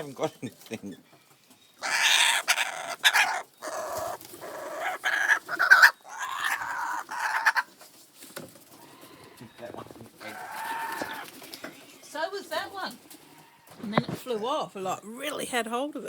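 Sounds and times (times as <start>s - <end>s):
kookaburras cackling: 1.8s - 7.8s, 8.8s - 11.4s.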